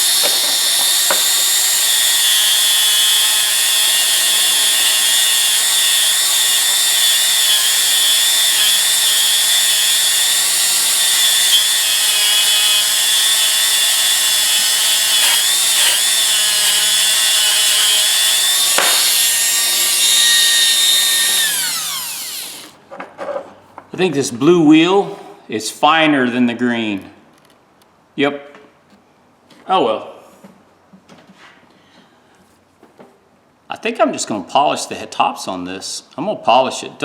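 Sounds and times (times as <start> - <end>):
grinding wheel whining: 0.0 - 22.8.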